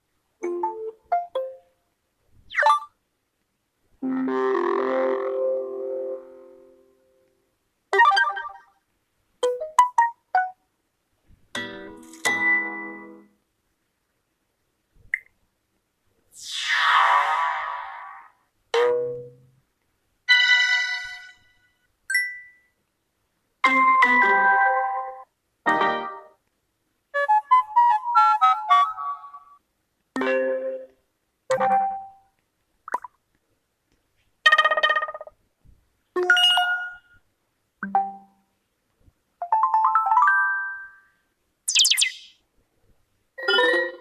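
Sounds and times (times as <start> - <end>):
phone notification blip: 41.7 - 42.3.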